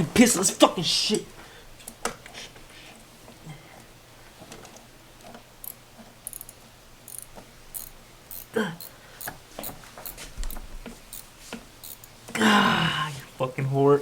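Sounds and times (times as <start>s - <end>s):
metallic tool clicks and clinks: 5.6s - 12.2s.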